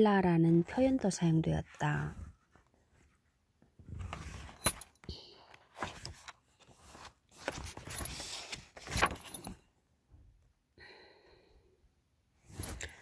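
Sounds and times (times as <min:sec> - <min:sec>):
handling rustling and clatter: 0:04.0 - 0:05.1, 0:05.8 - 0:09.6.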